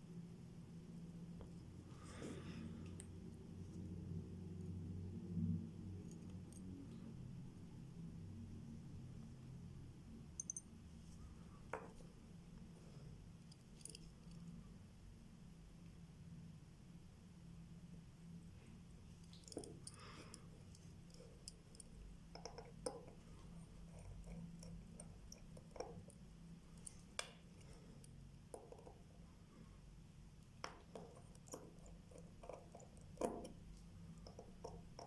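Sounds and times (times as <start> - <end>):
low steady hum: 0.0 - 35.0
small tools clicking on a watch: 10.4 - 10.7, 19.2 - 29.2, 30.4 - 35.0.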